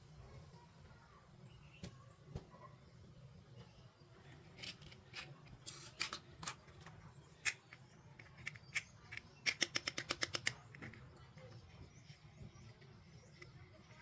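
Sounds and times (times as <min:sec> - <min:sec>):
toy pieces clicking: 0:07.4 - 0:10.9.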